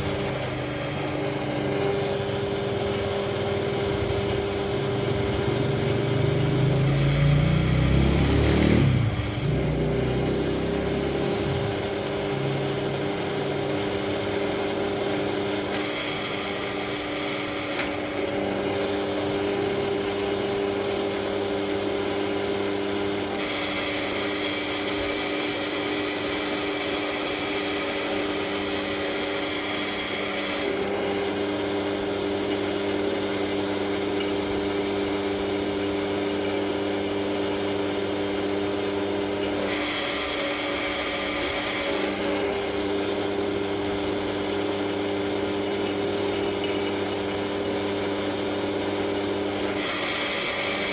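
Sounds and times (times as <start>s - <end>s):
electric drill running: 0.0s - 50.9s
drill bit cutting through steel: 10.6s - 21.0s, 22.3s - 32.7s, 38.9s - 44.4s, 49.3s - 50.9s.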